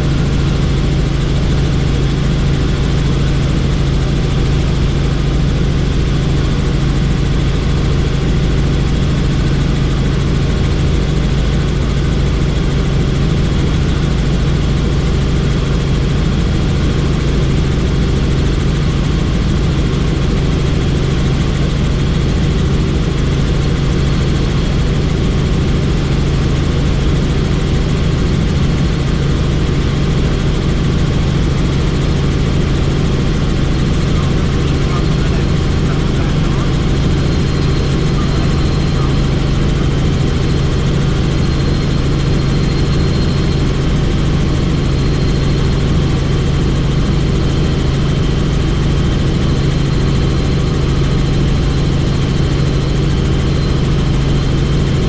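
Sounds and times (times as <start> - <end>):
helicopter rotor and engine: 0.0 - 55.0.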